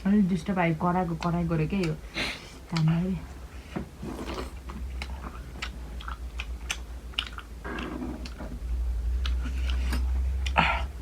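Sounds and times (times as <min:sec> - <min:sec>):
steady low hum: 0:00.0 - 0:11.0
wet chewing sounds: 0:04.1 - 0:11.0.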